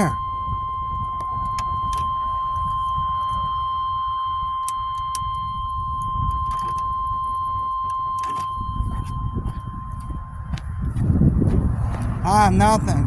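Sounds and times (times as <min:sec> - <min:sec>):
steady high tone: 0:00.0 - 0:13.0
headlight switch clicks: 0:01.2 - 0:03.4, 0:04.6 - 0:07.0
low rumble: 0:08.5 - 0:13.0.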